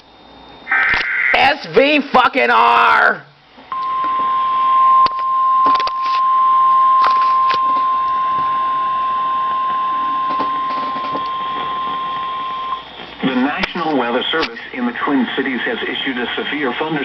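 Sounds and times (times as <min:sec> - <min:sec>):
static clicks: 0:00.0 - 0:01.4, 0:09.4 - 0:14.6
long steady alarm beep: 0:03.7 - 0:13.0.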